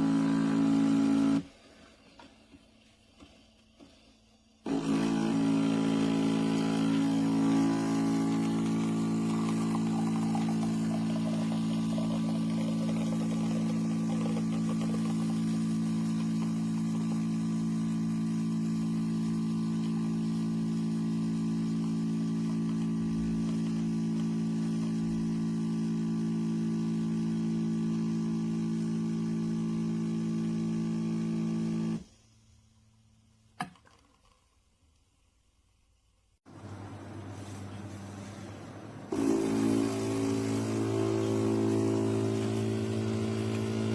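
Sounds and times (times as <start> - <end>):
espresso machine pump humming: 0.0 - 1.6, 4.6 - 32.1, 36.5 - 43.9.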